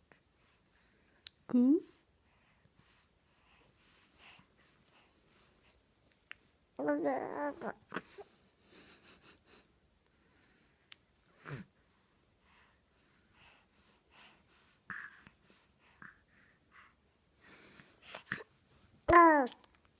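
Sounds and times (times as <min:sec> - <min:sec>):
baby breathing softly: 0:02.0 - 0:05.8, 0:07.8 - 0:18.6
baby cooing: 0:06.8 - 0:08.2, 0:19.1 - 0:19.6
low baby vocal sound: 0:06.8 - 0:08.3, 0:19.1 - 0:19.7.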